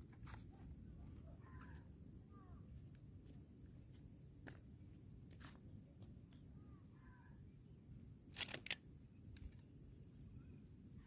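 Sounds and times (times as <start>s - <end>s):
faint bird chirps: 0.2s - 4.6s, 5.2s - 7.8s, 10.0s - 11.0s.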